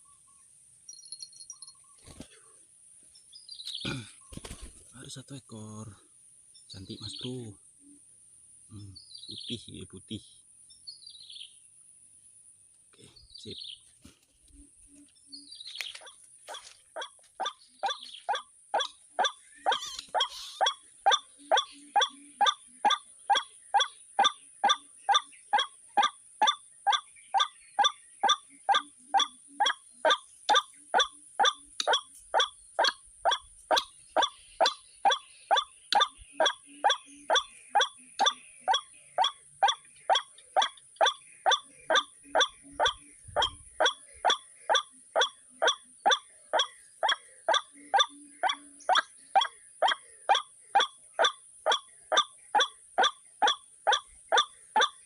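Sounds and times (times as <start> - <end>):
waterhen calling: 15.8 - 55.0.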